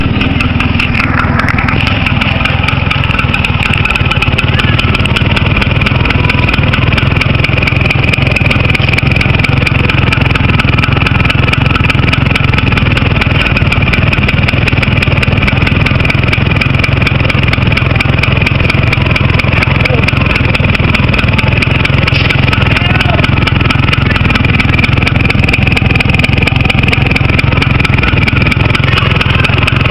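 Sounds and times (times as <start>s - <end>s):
loud motorcycle exhaust: 0.0s - 29.9s.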